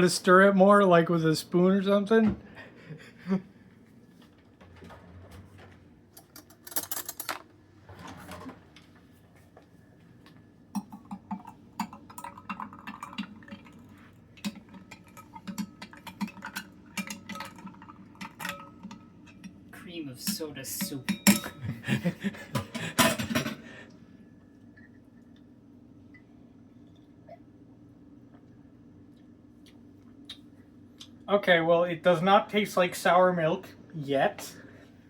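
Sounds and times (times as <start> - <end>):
spoon clinking against glass: 21.0 - 21.6.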